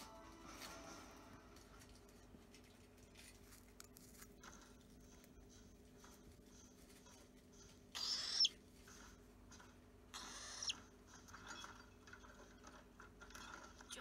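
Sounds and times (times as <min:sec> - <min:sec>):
cockatiel calls: 0:07.9 - 0:08.6, 0:10.1 - 0:10.8.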